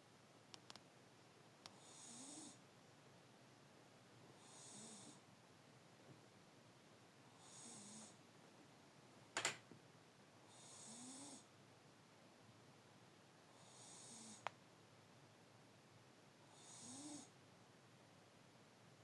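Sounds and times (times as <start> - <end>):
small tick: 0.5 - 0.8
pet snoring softly: 1.7 - 2.6, 4.3 - 5.3, 7.3 - 8.2, 10.4 - 11.5, 13.5 - 14.5, 16.4 - 17.4.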